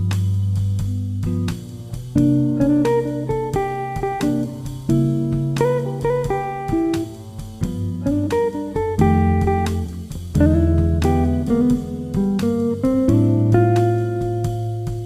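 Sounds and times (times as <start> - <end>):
plucked guitar melody: 0.0 - 15.0.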